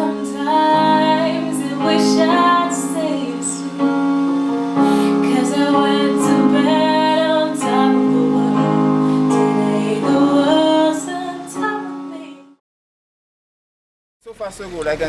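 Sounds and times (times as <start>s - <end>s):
woman singing: 0.0s - 4.0s, 4.8s - 12.6s
piano: 0.0s - 12.6s.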